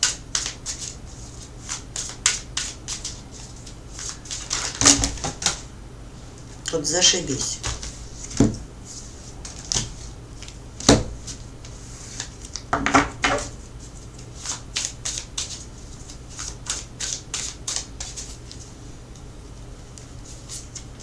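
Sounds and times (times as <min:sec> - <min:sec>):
cards knocking on a table: 0:07.6 - 0:08.6, 0:12.7 - 0:13.5.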